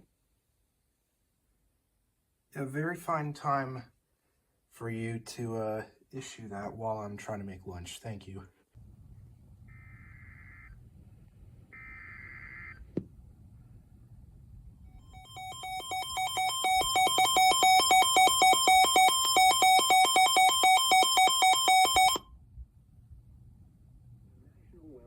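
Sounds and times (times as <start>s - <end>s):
two-tone electronic alert alarm: 11.8s - 12.8s, 15.0s - 22.3s.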